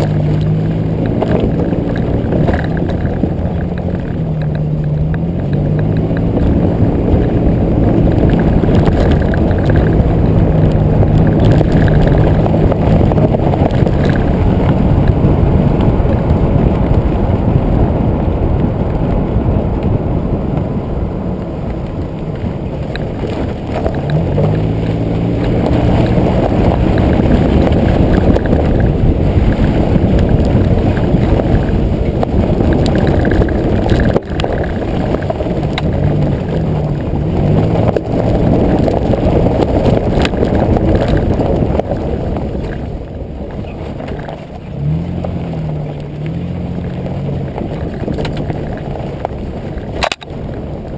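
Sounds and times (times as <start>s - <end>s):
truck engine revving: 0.0s - 50.9s
wheels and wind rushing noise: 0.0s - 50.9s.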